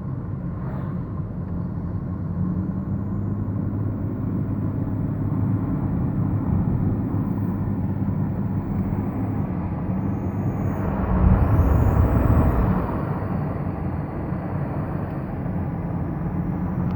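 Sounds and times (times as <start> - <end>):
high turbo whine: 8.4 - 16.9
diesel engine running: 10.1 - 13.4.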